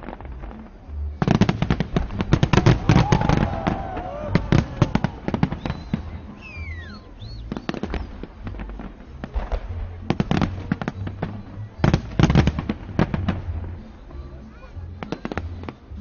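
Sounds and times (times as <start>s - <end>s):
fireworks banging: 0.0s - 16.0s
falling firework whistle: 2.5s - 8.1s.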